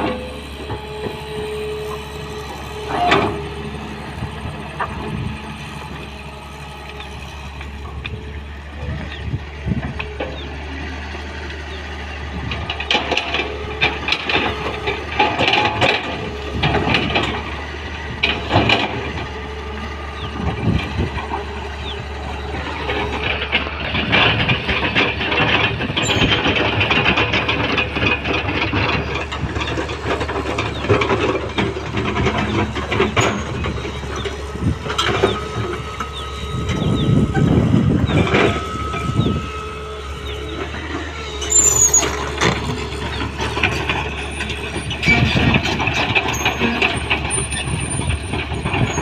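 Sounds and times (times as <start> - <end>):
excavator diesel engine running: 0.0 - 49.0
clanks and scraping on rock: 22.6 - 39.4, 40.2 - 49.0.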